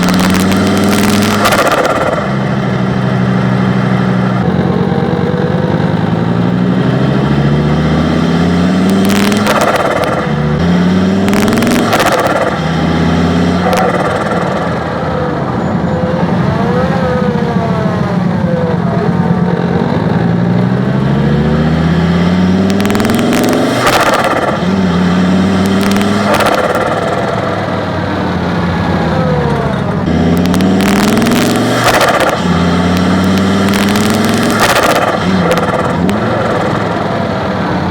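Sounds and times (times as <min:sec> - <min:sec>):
car engine revving: 0:00.0 - 0:37.9
turbo flutter: 0:08.1 - 0:15.6.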